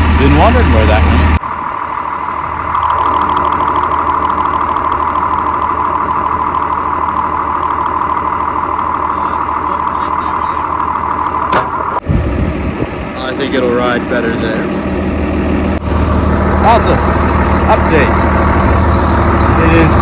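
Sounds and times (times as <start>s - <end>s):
steady whine: 0.0s - 20.0s
tractor engine drone: 0.0s - 20.0s
short knock: 11.5s - 11.9s.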